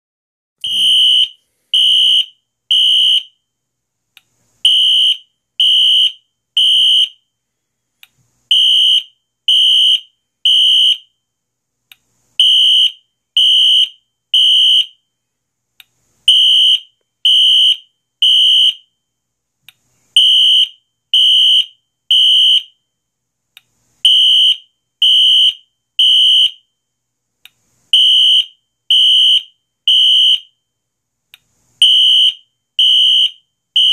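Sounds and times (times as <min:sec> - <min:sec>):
fire alarm horn blasts: 0:00.6 - 0:03.3, 0:24.1 - 0:26.6, 0:31.8 - 0:33.9.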